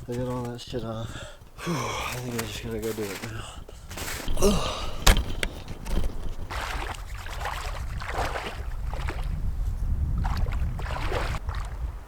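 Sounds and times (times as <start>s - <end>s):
water splashing and sloshing: 2.1s - 12.0s
wind rumble on microphone: 3.8s - 12.0s.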